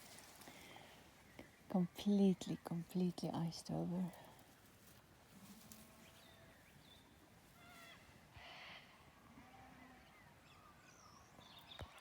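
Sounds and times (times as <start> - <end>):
soft rustle: 0.0 - 1.5, 2.8 - 8.2.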